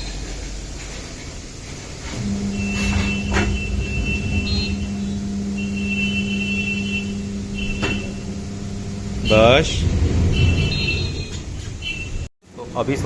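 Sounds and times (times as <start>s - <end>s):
electric motor humming: 2.1s - 10.3s
high squeak: 2.2s - 8.4s.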